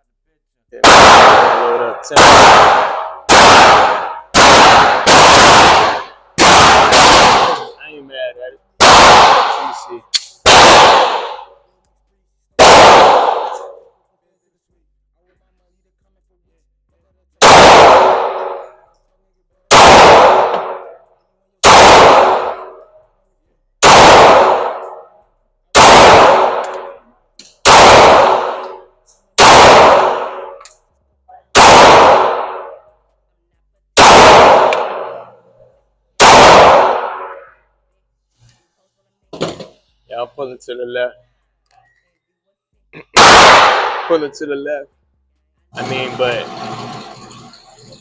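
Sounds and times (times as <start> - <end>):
pistol shots echoing: 0.8 - 7.9, 8.8 - 11.6, 12.6 - 13.9, 17.4 - 18.9, 19.7 - 23.1, 23.8 - 30.7, 31.5 - 33.0, 34.0 - 37.6, 43.2 - 44.5.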